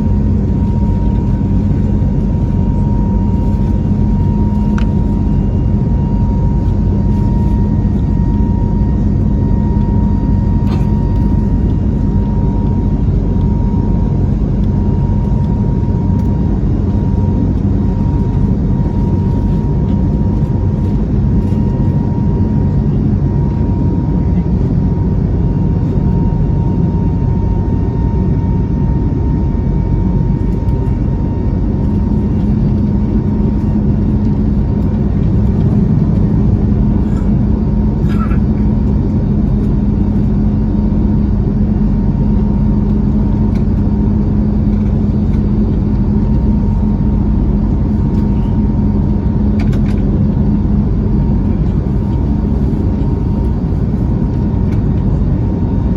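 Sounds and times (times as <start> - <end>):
jet engine rumble in cabin: 0.0 - 55.9.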